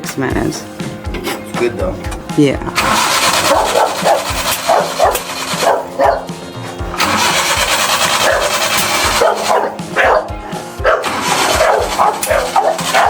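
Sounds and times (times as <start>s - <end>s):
truck engine running: 0.7s - 13.0s
dogs barking: 2.8s - 13.0s.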